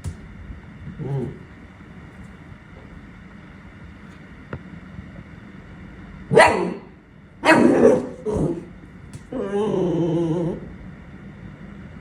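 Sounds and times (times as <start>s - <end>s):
puppy barking: 6.3s - 8.7s.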